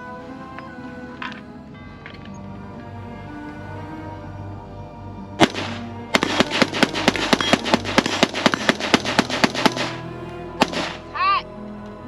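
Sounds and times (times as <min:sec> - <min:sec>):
background music: 0:00.0 - 0:12.0
rifle shots: 0:05.4 - 0:10.0, 0:10.6 - 0:11.0.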